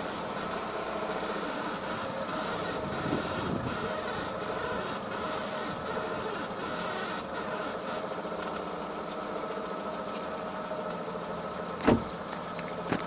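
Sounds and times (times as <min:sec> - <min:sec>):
steady mechanical squeak: 0:00.0 - 0:09.2.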